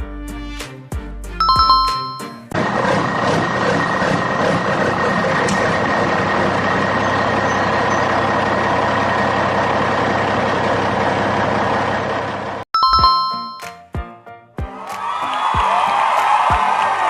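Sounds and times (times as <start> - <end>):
engine running with whine: 1.4 - 12.6.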